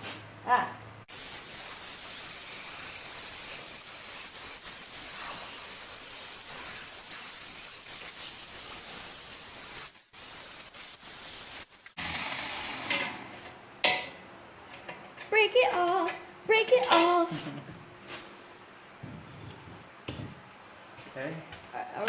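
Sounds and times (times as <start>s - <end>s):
angle grinder cutting metal: 6.4s - 13.3s.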